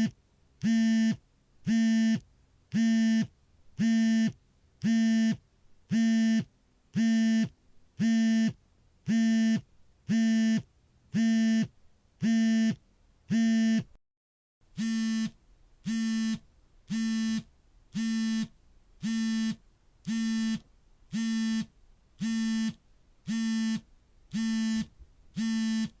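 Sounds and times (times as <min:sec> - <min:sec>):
smartphone vibrating buzzes: 0:00.0 - 0:13.9, 0:14.7 - 0:26.0.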